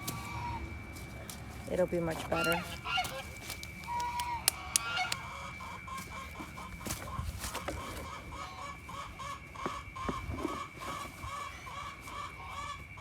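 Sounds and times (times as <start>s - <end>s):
poultry calling: 0.0s - 13.0s
sharp clicks: 3.5s - 5.3s.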